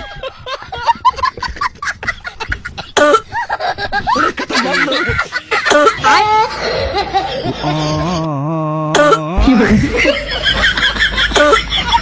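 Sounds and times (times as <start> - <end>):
comic clucking cough: 2.9 - 3.5, 4.7 - 6.2, 9.0 - 10.0, 11.1 - 11.7.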